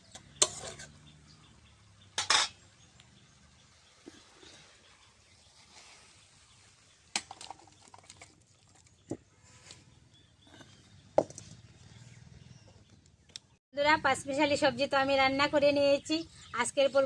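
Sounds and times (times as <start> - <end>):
metal utensil clinking on pot: 0.1 - 1.0, 2.2 - 2.6.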